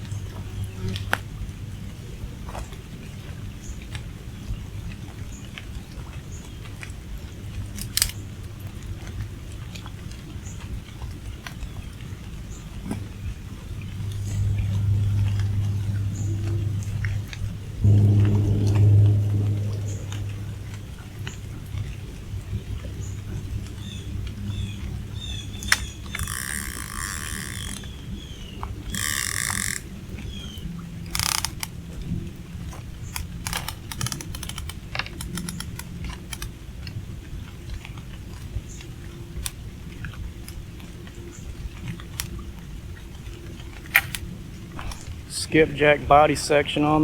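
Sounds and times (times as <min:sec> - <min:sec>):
steady low rumble: 0:00.0 - 0:02.5, 0:12.4 - 0:26.2, 0:39.0 - 0:47.0
rapid ratchet clicks: 0:26.1 - 0:27.9, 0:28.9 - 0:29.9, 0:31.2 - 0:31.7, 0:33.2 - 0:36.5
fishing reel buzzing: 0:26.1 - 0:28.0, 0:28.9 - 0:29.9, 0:31.1 - 0:31.7.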